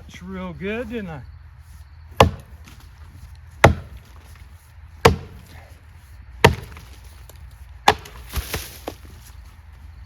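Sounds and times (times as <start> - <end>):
chopping blows into wood: 3.6 - 4.0, 7.8 - 9.0.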